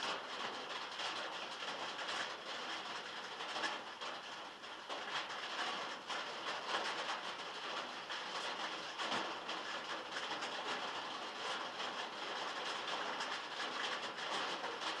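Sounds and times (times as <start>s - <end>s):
heavy rain on metal roof: 0.0s - 15.0s.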